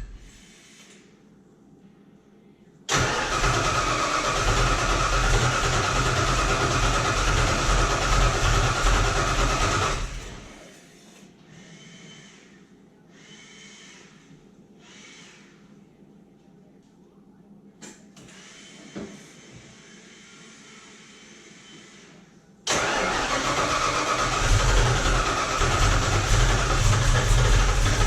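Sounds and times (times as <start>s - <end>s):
starter cranking engine: 2.9s - 10.6s, 22.7s - 28.0s.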